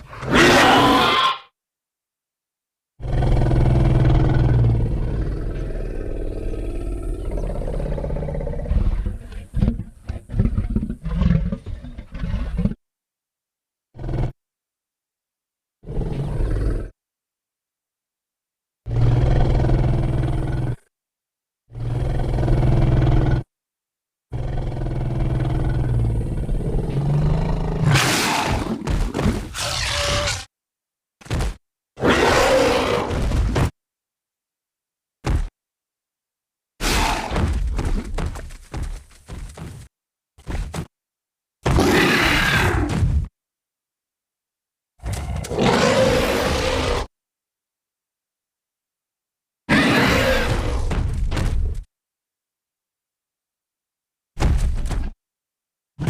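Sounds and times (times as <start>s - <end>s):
monster roar: 0.2s - 1.5s, 32.0s - 33.2s, 45.1s - 47.1s, 49.7s - 50.9s
low growling roar: 3.0s - 9.4s, 18.9s - 20.8s, 21.7s - 23.5s, 24.4s - 28.6s, 45.1s - 47.1s.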